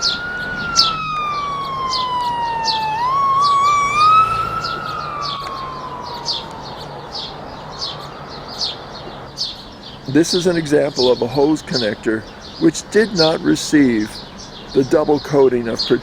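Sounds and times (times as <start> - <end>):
siren wailing: 0.0 - 9.3
bird chirping: 0.0 - 16.0.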